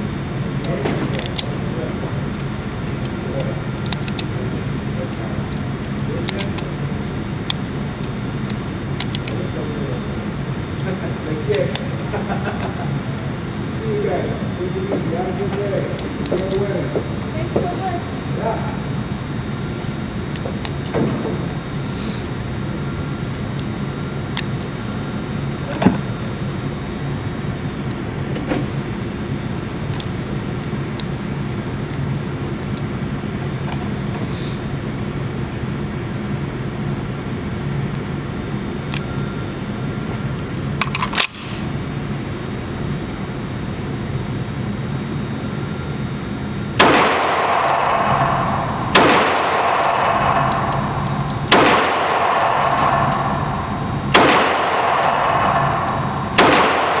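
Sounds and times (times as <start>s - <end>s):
background hum: 0.0s - 57.0s
pistol shots: 46.8s - 57.0s.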